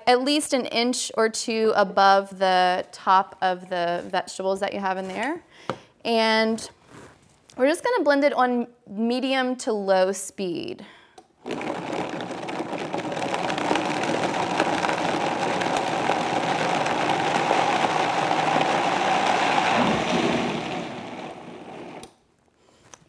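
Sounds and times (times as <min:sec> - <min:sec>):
water and carrot churning: 0:11.4 - 0:22.0
blender whirring: 0:11.4 - 0:22.1.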